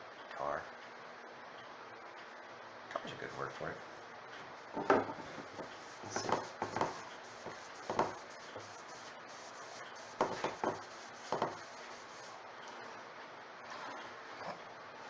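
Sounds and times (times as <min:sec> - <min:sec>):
rubbing strokes on wood: 0:05.2 - 0:12.4.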